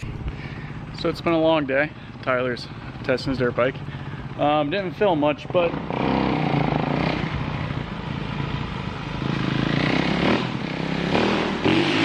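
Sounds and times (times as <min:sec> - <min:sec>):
dirt bike engine revving: 0:05.5 - 0:12.0.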